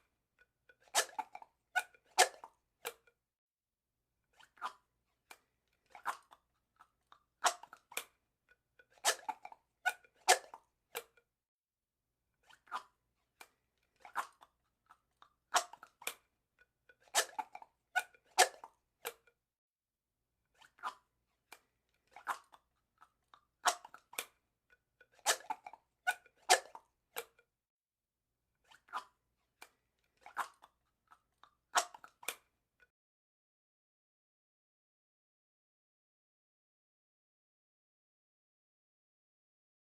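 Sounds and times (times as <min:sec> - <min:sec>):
plastic straw squeaking: 0:00.8 - 0:03.1, 0:08.9 - 0:11.2, 0:17.0 - 0:19.2, 0:25.0 - 0:27.4.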